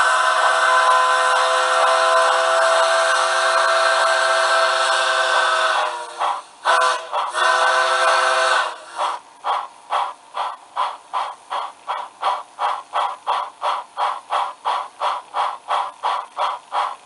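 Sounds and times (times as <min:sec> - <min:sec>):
steam locomotive whistle: 0:00.0 - 0:09.2
steam exhaust chuffs: 0:00.0 - 0:17.0.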